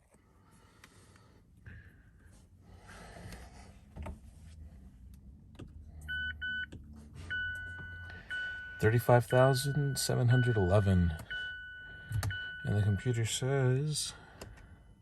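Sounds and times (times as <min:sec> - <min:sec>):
dashboard chime beeps: 0:07.3 - 0:13.1.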